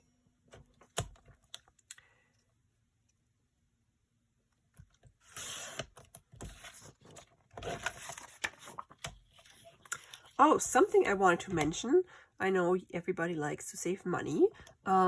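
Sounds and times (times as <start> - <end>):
paper rustling and sliding: 5.2 - 10.3.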